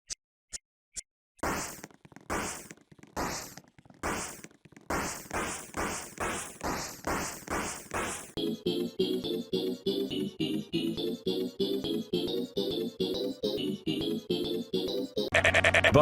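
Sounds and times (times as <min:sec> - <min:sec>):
short noisy sound effect bursts: 0:01.4 - 0:08.4.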